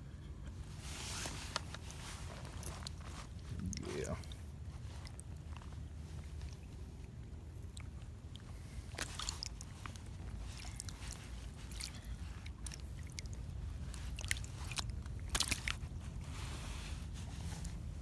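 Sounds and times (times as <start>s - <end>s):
water sloshing: 1.8s - 16.5s
low rumble: 3.1s - 4.5s.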